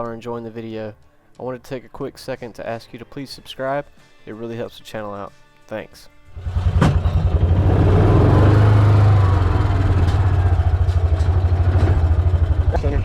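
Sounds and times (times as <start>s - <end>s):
engine starting and revving: 6.3s - 13.0s.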